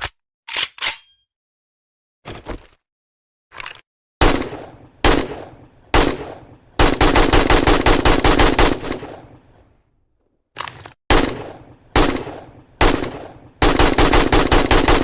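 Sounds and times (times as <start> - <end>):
rifle gunfire: 4.2 - 9.4, 11.1 - 15.0.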